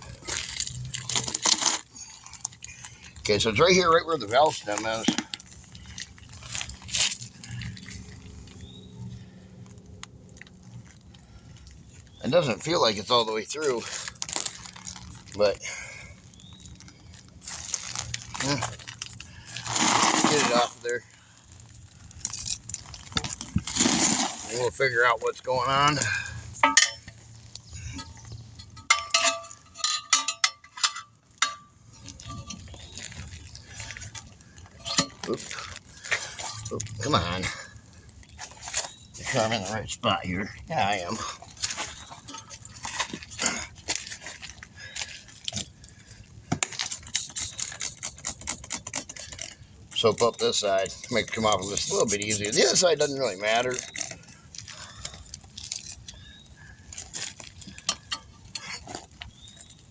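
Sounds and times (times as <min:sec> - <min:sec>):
hand rubbing rubber tire: 0:19.6 - 0:20.8, 0:50.0 - 0:53.8
tools clinking on wheel rim: 0:25.9 - 0:33.1, 0:34.8 - 0:36.8.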